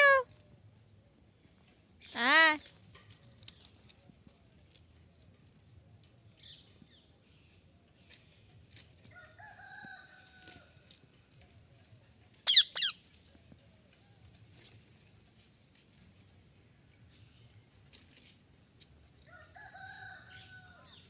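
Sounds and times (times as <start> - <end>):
parakeet screeching: 12.5 - 13.0.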